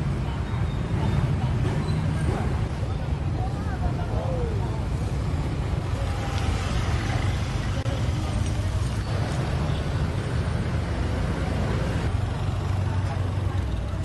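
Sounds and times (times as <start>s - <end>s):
engine rumble: 0.0s - 14.0s.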